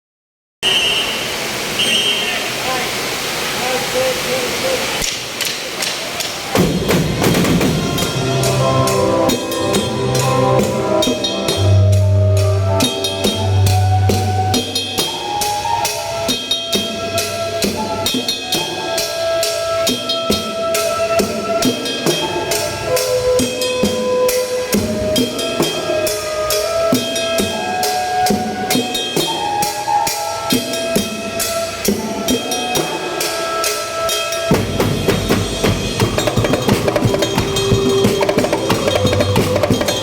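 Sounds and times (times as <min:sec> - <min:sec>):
fast snare and bass drum: 0:06.3 - 0:08.2, 0:34.5 - 0:40.0
held melody notes: 0:06.6 - 0:40.0.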